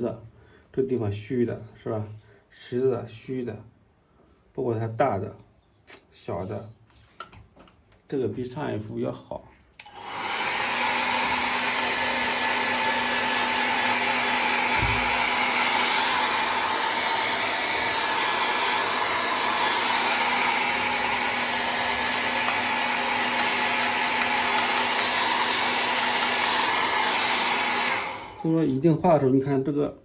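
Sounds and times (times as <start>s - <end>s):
hair dryer running: 9.8s - 28.8s
low thump: 14.7s - 15.1s.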